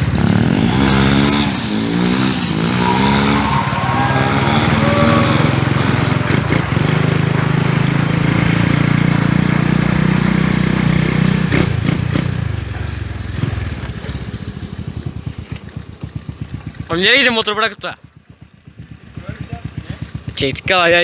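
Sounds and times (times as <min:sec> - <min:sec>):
motorcycle engine running: 0:04.8 - 0:21.0.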